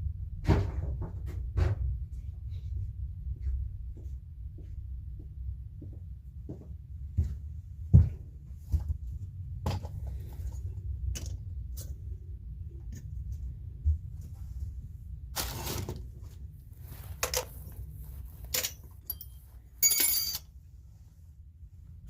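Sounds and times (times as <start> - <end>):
low steady hum: 0.0 - 22.0
knocks and clatters of tools: 17.1 - 17.8, 18.4 - 20.5.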